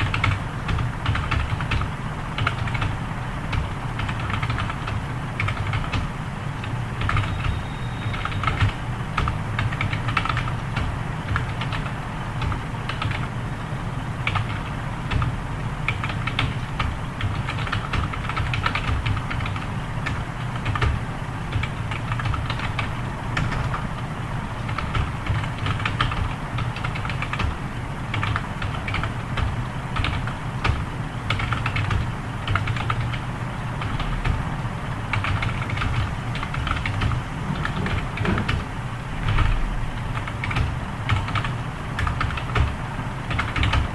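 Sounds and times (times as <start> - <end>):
keyboard typing fast: 0.0 - 43.9
steady low hum: 0.0 - 43.9.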